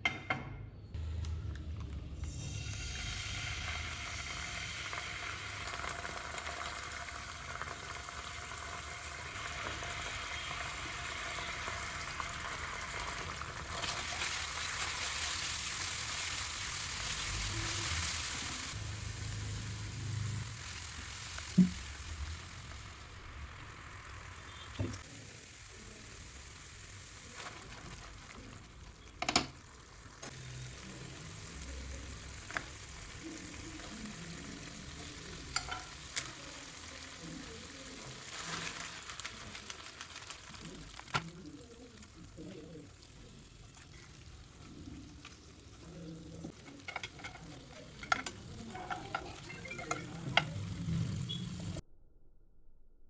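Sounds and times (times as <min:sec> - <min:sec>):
food sizzling in hot oil: 0:02.2 - 0:51.8.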